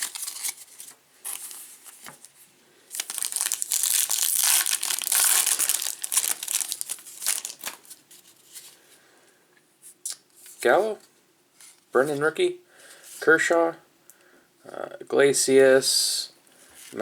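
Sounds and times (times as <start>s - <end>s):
wrapper tearing and crinkling: 0.0s - 1.6s, 2.9s - 8.0s.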